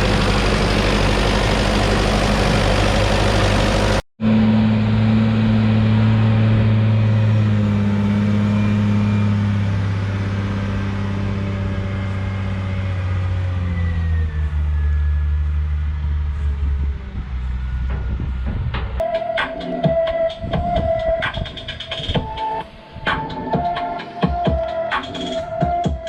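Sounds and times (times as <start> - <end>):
tractor engine winding down: 0.0 - 25.5.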